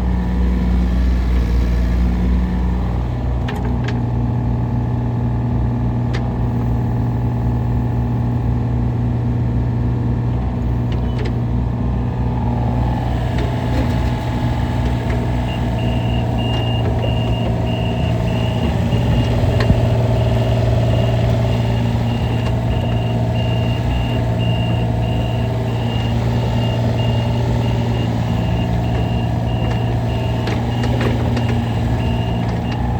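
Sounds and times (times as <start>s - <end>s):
excavator diesel engine: 0.0s - 32.9s
hydraulic whine: 10.6s - 32.9s
travel alarm beeping: 15.4s - 32.9s.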